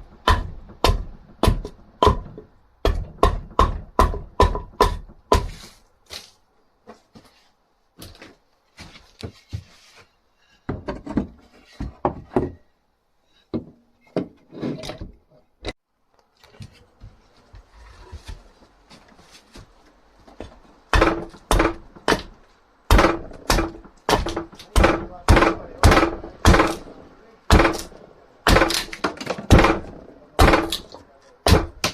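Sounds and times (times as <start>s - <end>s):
hand tools knocking on wood: 0.2s - 5.6s, 10.6s - 12.7s, 13.5s - 14.4s, 20.3s - 26.8s.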